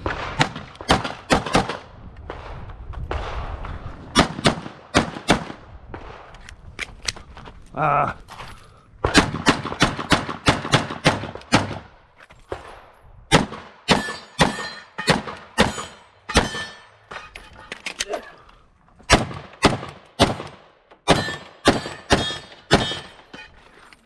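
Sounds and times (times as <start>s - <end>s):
pistol shots: 0.0s - 3.5s, 4.1s - 6.3s, 9.0s - 11.9s, 19.1s - 23.2s.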